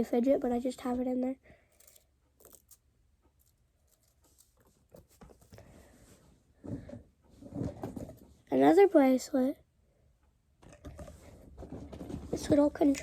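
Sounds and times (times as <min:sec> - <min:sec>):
plastic toys clicking and rustling: 0:01.6 - 0:05.6, 0:10.6 - 0:13.0.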